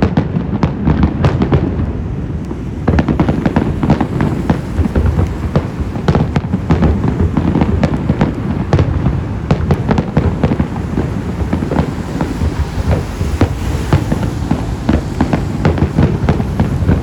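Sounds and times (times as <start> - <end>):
fireworks bangs and crackles: 0.0 - 17.0
low rumble of booms: 0.0 - 17.0.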